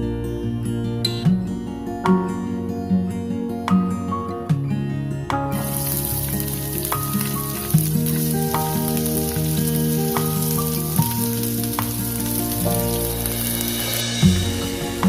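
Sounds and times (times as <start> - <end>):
acoustic guitar music: 0.0 - 15.0
food sizzling in a pan: 5.6 - 15.0.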